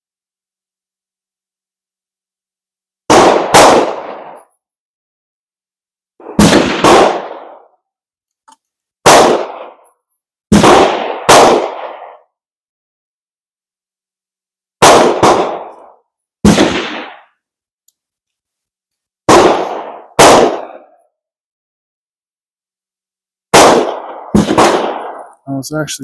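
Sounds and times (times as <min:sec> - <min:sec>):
gunshots: 0:03.1 - 0:04.4, 0:06.2 - 0:07.7, 0:09.0 - 0:09.8, 0:10.5 - 0:12.2, 0:14.8 - 0:17.3, 0:19.3 - 0:20.9, 0:23.5 - 0:25.3.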